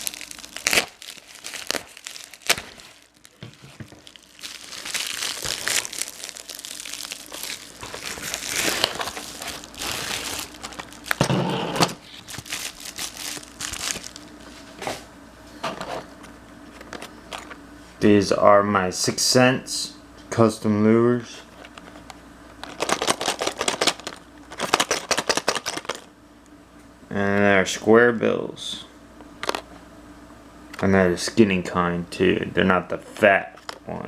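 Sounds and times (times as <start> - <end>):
plastic packaging tearing and crinkling: 0.0 - 14.6, 22.6 - 26.1.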